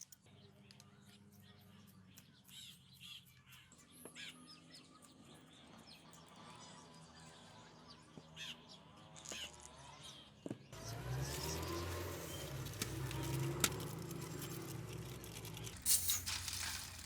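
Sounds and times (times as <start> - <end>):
low hum with rustling: 10.8 - 17.0.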